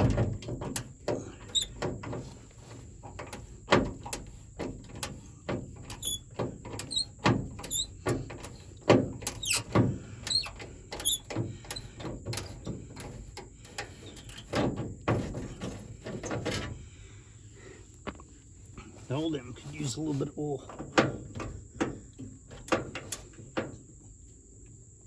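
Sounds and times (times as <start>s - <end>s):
metal clicks and knocks: 0.0s - 16.8s, 20.6s - 23.8s
short high squeaks: 1.5s - 1.8s, 5.9s - 8.0s, 9.3s - 9.7s, 10.3s - 11.3s.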